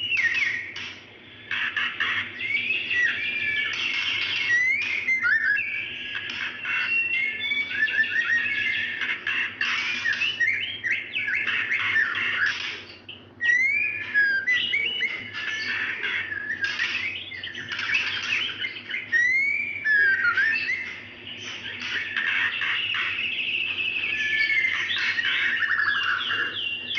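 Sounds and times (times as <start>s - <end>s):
bird whistled calls and chattering: 0.0s - 26.9s.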